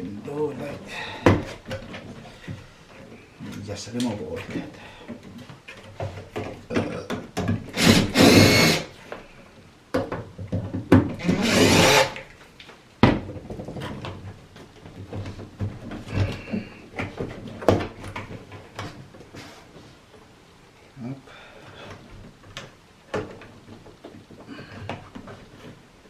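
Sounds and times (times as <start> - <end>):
power drill whirring: 7.7 - 8.9, 11.2 - 12.2.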